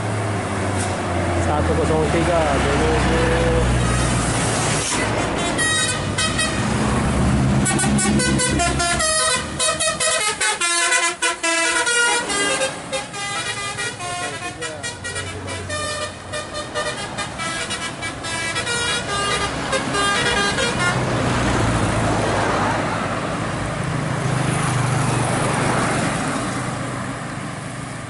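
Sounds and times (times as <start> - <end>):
bus engine passing: 0.0 - 28.0
musical bus horn tune: 4.9 - 6.8, 7.5 - 21.2.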